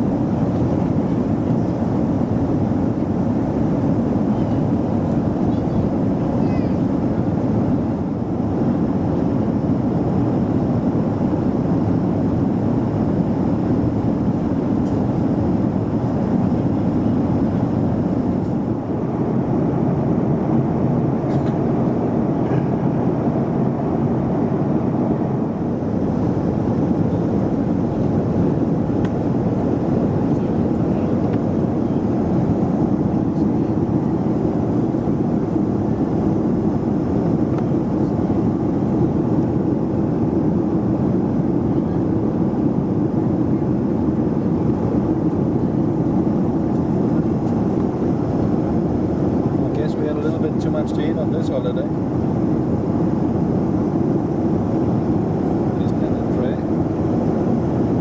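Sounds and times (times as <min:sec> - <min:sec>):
airplane cabin noise: 0:00.0 - 0:58.0.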